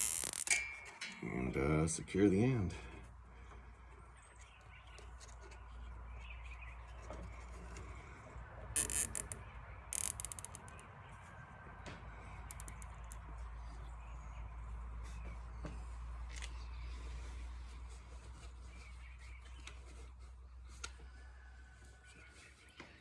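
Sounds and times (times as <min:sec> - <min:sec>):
zip tie zipping tight: 0:00.0 - 0:00.5
rapid ratchet clicks: 0:00.0 - 0:00.6, 0:08.8 - 0:09.4, 0:10.0 - 0:10.7, 0:12.5 - 0:13.2.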